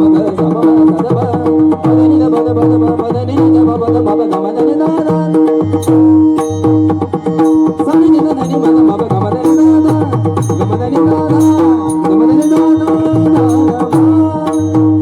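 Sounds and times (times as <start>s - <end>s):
hand drum rhythm: 0.0s - 15.0s
sustained melody: 4.2s - 15.0s.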